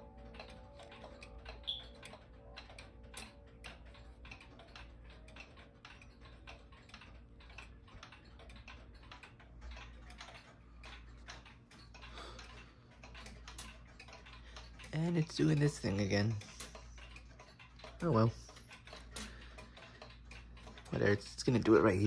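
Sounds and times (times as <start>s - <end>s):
mechanical clock ticking: 0.0s - 22.0s.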